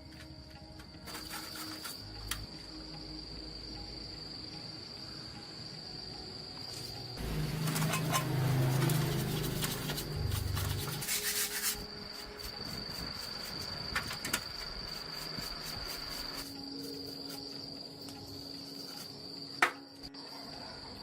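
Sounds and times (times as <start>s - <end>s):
cricket trill: 0.0s - 21.0s
scraping on a workpiece: 7.6s - 12.5s.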